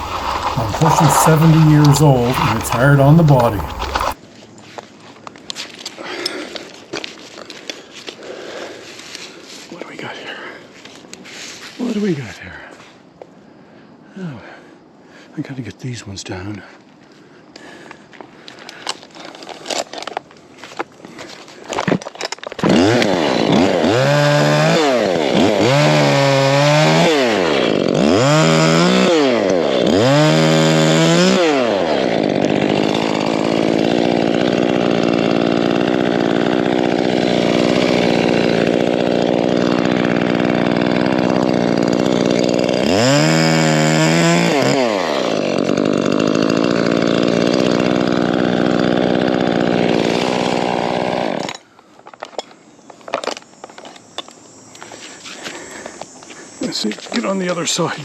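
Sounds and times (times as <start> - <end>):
chainsaw revving and cutting: 0.0 - 4.2, 22.6 - 51.7.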